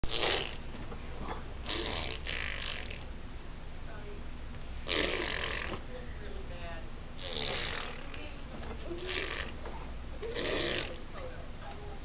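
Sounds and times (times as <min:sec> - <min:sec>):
fart noises: 0:00.0 - 0:00.6, 0:01.6 - 0:03.0, 0:04.8 - 0:05.8, 0:07.2 - 0:11.0.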